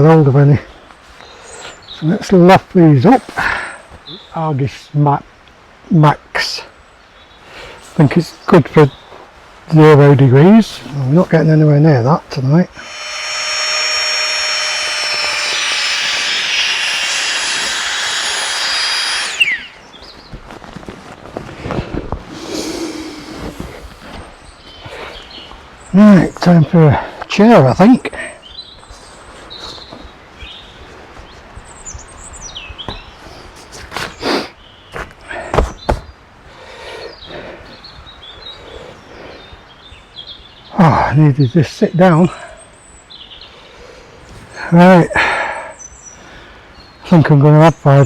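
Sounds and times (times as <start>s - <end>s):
birds chirping: 12.6s - 20.4s
electric fan whining: 12.7s - 19.9s.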